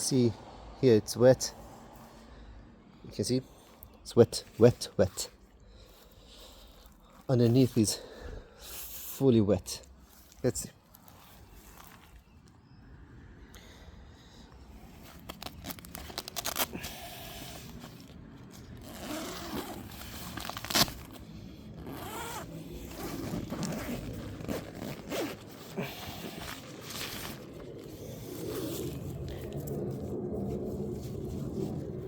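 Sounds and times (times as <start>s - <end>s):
tent fabric rustling: 4.5s - 7.9s, 9.9s - 12.3s, 14.8s - 32.0s
tent zipper being pulled open: 10.0s - 12.1s, 14.9s - 32.0s.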